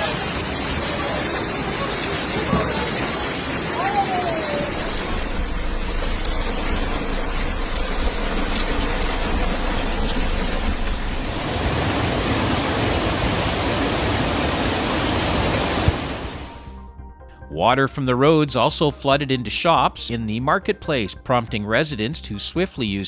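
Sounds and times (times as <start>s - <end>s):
running floodwater: 0.0s - 16.7s
heavy rain: 0.0s - 16.8s.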